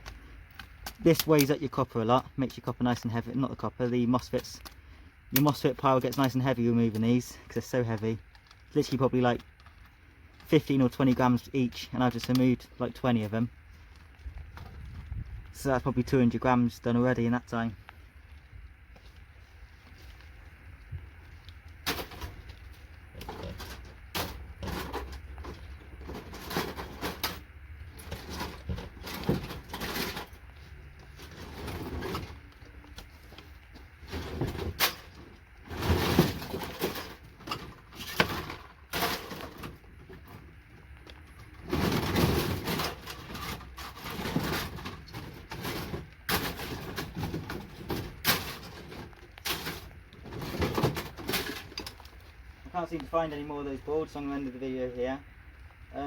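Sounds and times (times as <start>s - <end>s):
hand tools clicking and clattering: 21.8s - 33.5s, 34.1s - 40.4s, 41.0s - 52.2s
parts dropping onto a pile: 23.4s - 30.4s, 34.1s - 39.8s, 41.6s - 52.1s.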